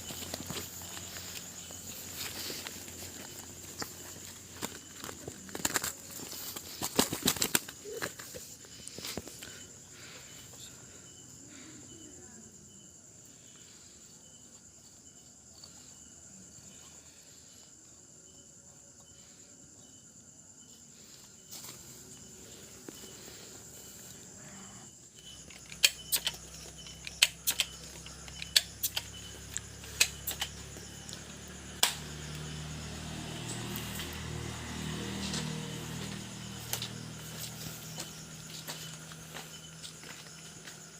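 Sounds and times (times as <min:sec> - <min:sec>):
insects chirring: 0:00.0 - 0:40.9.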